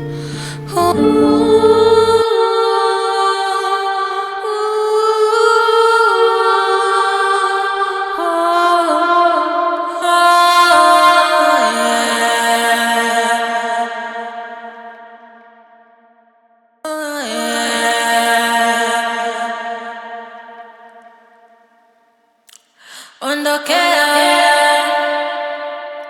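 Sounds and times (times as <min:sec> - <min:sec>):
bass: 0:00.0 - 0:02.3.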